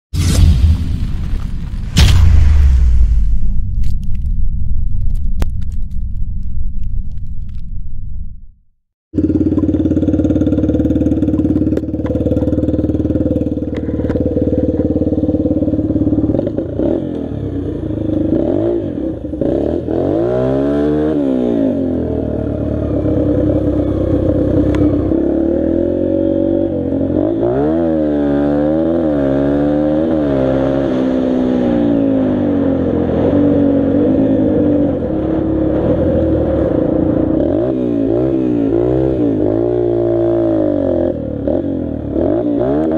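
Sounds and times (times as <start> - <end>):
dirt bike engine revving: 9.2 - 42.9.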